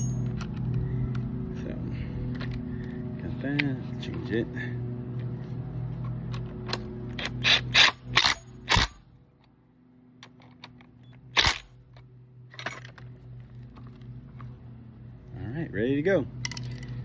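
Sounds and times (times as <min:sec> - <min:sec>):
steady low hum: 0:00.0 - 0:17.0
metal clicks and clanks: 0:06.0 - 0:09.0, 0:10.2 - 0:14.6, 0:16.4 - 0:17.0.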